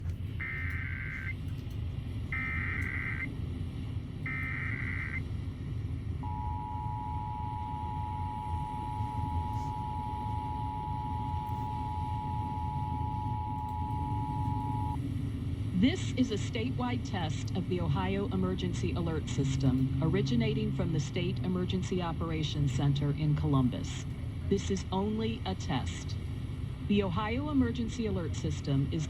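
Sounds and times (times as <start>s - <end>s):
steady low rumble: 0.0s - 29.0s
warbling digital data tones: 0.4s - 1.4s, 2.4s - 3.3s, 4.3s - 5.2s, 6.2s - 15.0s
two-tone attention signal: 2.4s - 3.3s, 6.2s - 15.0s.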